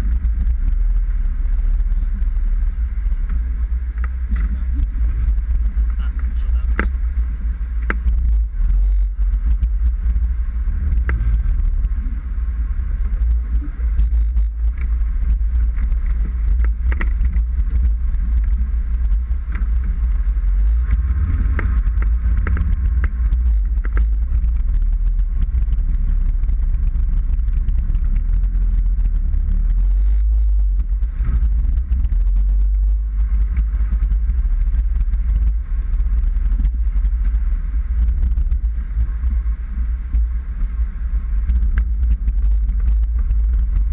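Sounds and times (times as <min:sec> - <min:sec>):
low engine rumble: 0:00.0 - 0:43.9
knocks and rattles: 0:13.0 - 0:37.4.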